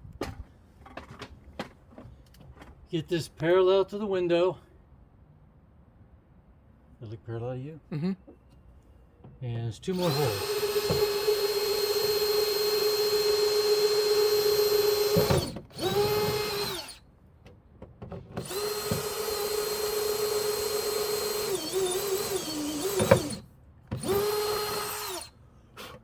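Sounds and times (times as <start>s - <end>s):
power drill boring through metal: 9.9s - 17.0s, 18.4s - 23.4s, 24.0s - 25.3s.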